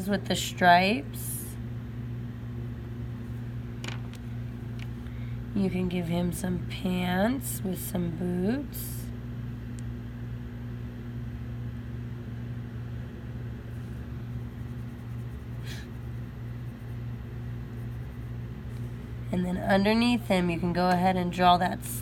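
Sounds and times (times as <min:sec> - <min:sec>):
low electrical hum: 0:00.0 - 0:22.0.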